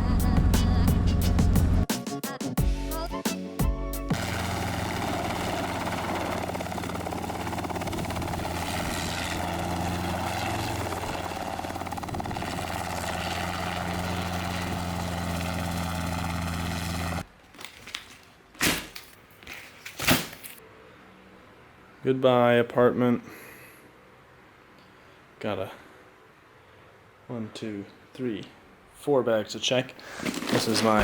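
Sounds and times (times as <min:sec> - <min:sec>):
helicopter engine and rotor drone: 0:04.1 - 0:17.2.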